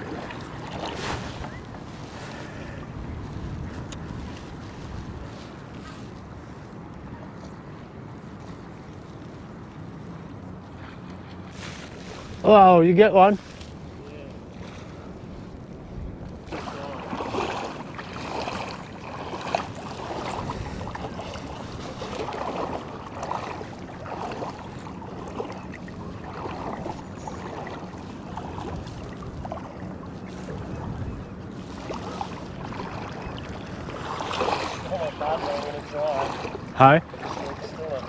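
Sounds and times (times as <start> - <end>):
water washing: 0.0 - 5.6, 16.3 - 38.0
wind buffeting microphone: 0.0 - 38.0.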